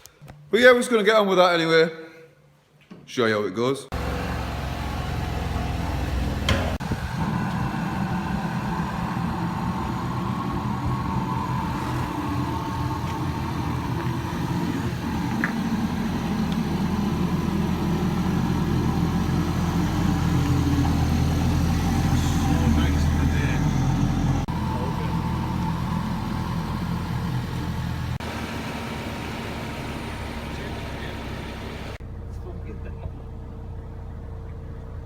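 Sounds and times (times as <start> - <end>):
car engine running: 3.9 - 35.0.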